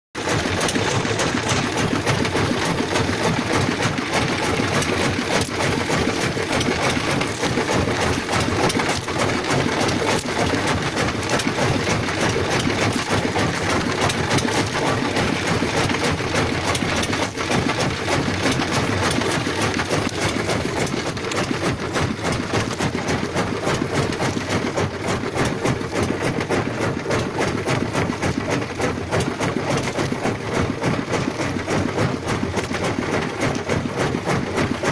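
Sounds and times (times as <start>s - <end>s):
boat motor chugging: 0.2s - 34.9s
wind: 0.2s - 34.9s.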